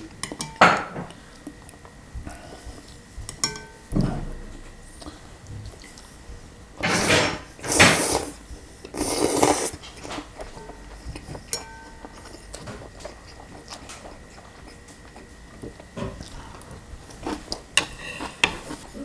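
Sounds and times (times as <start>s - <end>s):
utensil clinking against bowl: 3.3s - 3.9s, 10.4s - 14.4s
loud slurping of noodles: 7.0s - 9.8s.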